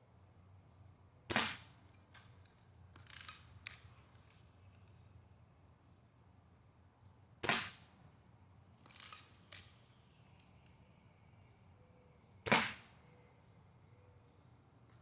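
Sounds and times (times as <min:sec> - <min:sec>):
bb gun shot crack: 0:01.3 - 0:01.7, 0:07.4 - 0:07.8, 0:12.5 - 0:12.9
gun cocking scrape and click: 0:02.2 - 0:05.0, 0:08.8 - 0:09.7.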